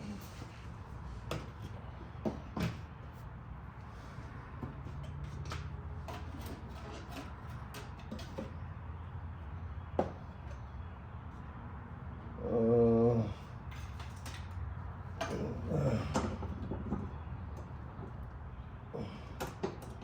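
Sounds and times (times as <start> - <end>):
parts knocking and clicking: 4.5 - 8.7, 13.6 - 18.6, 19.2 - 20.0.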